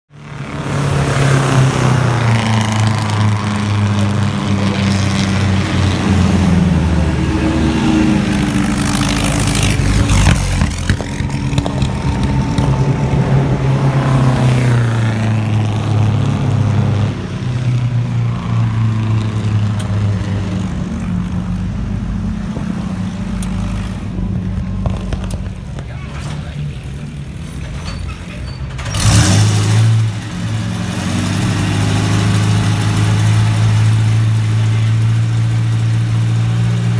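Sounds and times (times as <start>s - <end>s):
racecar engines revving: 0.1s - 36.9s
racecar passing by: 0.3s - 17.3s.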